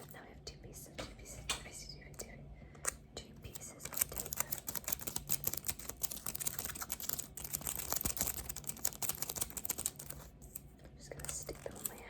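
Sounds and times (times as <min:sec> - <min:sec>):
adhesive tape crackling: 0:03.8 - 0:10.6, 0:11.2 - 0:12.0.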